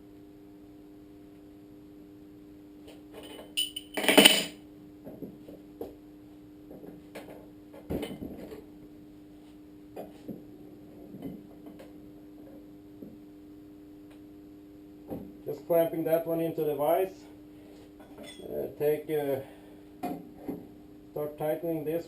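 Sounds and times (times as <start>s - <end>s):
steady low hum: 0.0s - 22.0s
metal tools clinking and knocking: 3.2s - 4.5s, 18.2s - 18.5s.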